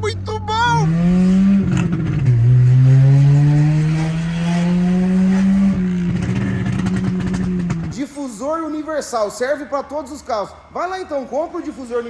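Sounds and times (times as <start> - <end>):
car engine revving loudly: 0.6 - 7.9.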